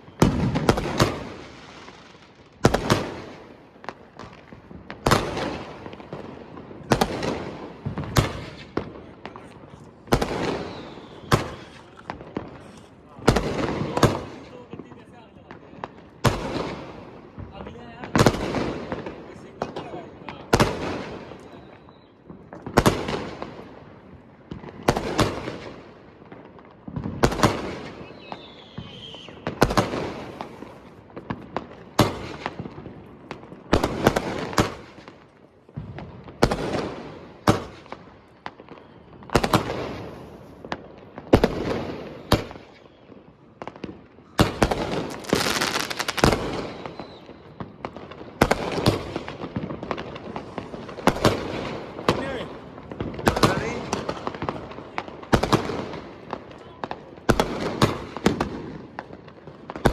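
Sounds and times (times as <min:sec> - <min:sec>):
fireworks banging with echo: 0:00.0 - 0:59.9.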